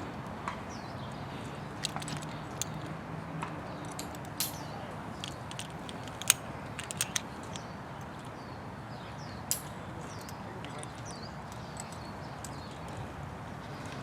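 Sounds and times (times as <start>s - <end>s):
carabiners clicking and clinking: 1.7s - 2.9s, 3.8s - 8.3s, 9.5s - 13.0s.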